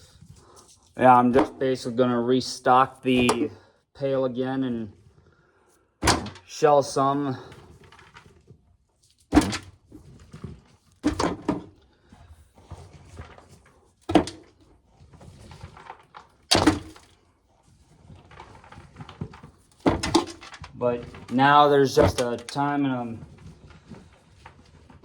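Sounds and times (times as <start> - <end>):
rustling and scraping of corn: 0.0 - 3.5, 6.4 - 25.0
corn thunking into a pail: 3.1 - 3.6, 6.0 - 6.6, 9.3 - 11.8, 12.6 - 17.2, 18.1 - 24.1.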